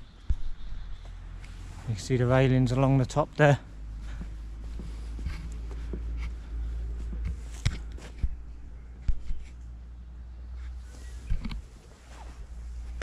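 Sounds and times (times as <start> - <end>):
footsteps: 3.8 - 8.4
camera handling rumble: 7.2 - 9.7, 11.0 - 11.7.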